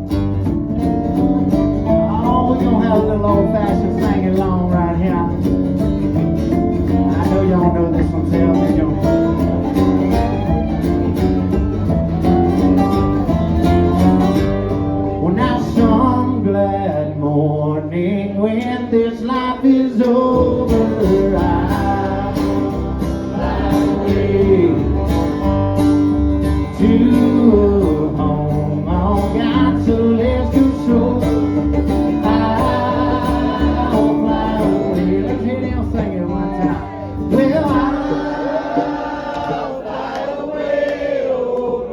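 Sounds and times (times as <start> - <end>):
sliding guitar lead line: 0.0 - 40.1
acoustic guitar strumming: 0.0 - 41.9.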